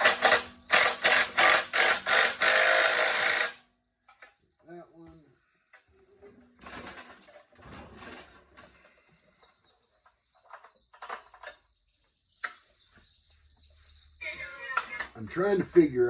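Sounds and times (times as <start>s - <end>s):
socket ratchet clicking: 0.0s - 3.6s
sharp metal clicks and knocks: 0.0s - 4.4s.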